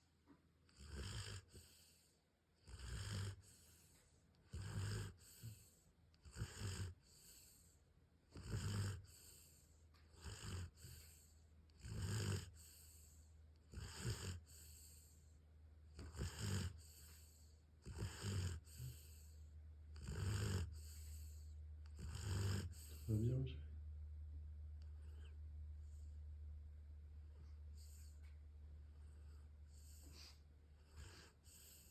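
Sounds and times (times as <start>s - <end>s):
quiet breathing: 0.0s - 31.9s
loud rasping snore: 0.7s - 2.0s, 2.6s - 3.8s, 4.5s - 7.6s, 8.3s - 15.2s, 16.0s - 19.4s, 20.0s - 23.4s, 29.1s - 31.9s
low hum: 23.1s - 29.8s.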